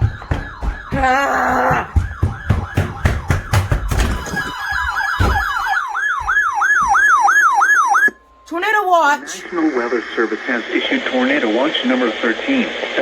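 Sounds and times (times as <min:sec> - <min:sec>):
rapid thumps: 0:00.0 - 0:07.2
fast yelp siren: 0:00.0 - 0:09.4
electronic sirens: 0:00.0 - 0:11.9.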